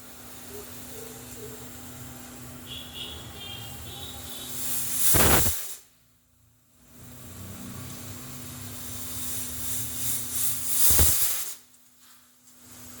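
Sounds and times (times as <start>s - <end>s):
pressure cooker steam whistle: 2.6s - 5.5s.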